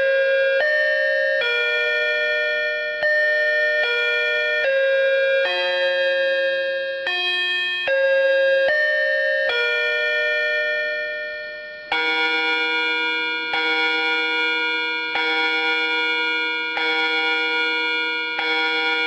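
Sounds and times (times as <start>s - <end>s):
bell-like chime melody: 4.6s - 12.3s.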